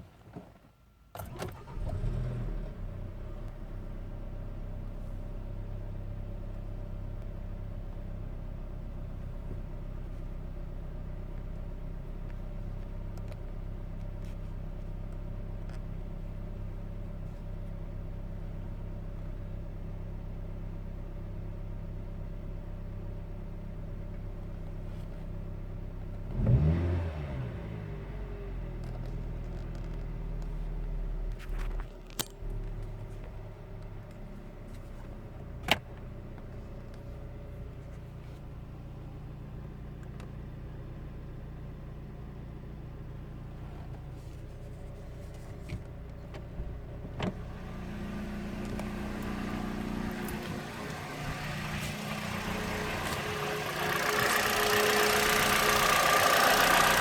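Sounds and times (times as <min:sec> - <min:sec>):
car engine idling roughly: 0:46.9 - 0:57.0
engine throttle blip: 0:47.1 - 0:57.0.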